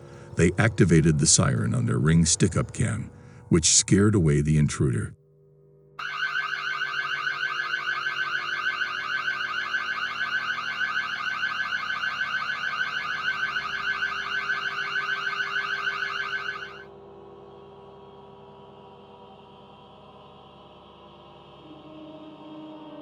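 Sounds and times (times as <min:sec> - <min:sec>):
pulsing electronic siren: 0:06.0 - 0:16.9.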